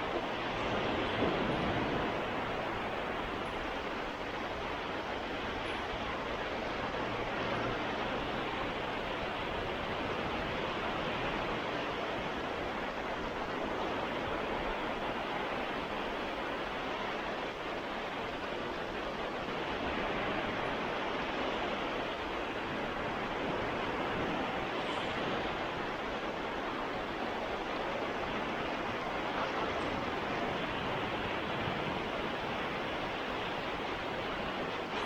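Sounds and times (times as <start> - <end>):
surf washing onto beach: 0.0 - 35.0.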